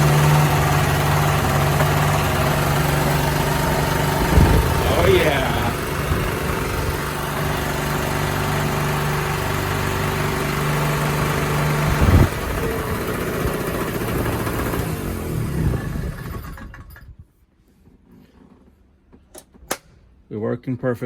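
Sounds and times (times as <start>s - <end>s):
generator engine running: 0.0s - 17.0s.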